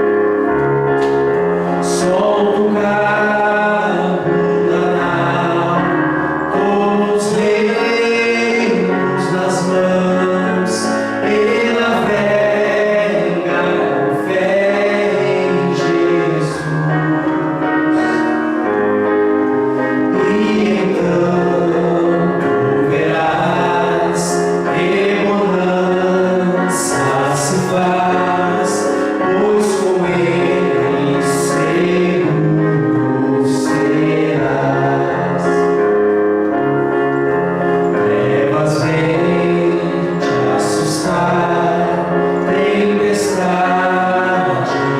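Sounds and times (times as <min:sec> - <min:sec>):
instrumental accompaniment: 0:00.0 - 0:44.9
voices singing a hymn in harmony: 0:01.6 - 0:44.9.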